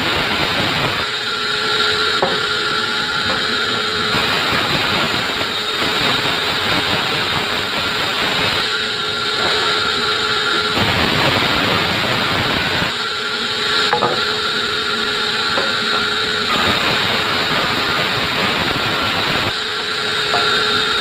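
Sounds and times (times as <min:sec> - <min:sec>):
sawmill saw cutting log: 0:00.0 - 0:21.0.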